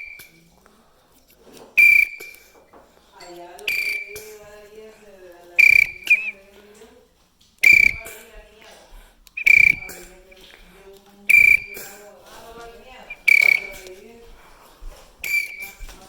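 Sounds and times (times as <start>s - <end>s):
shrill alarm horn blasts: 1.8s - 2.5s, 3.7s - 4.4s, 5.6s - 6.4s, 7.6s - 8.4s, 9.4s - 10.3s, 11.3s - 12.1s, 12.9s - 14.0s, 15.2s - 15.9s.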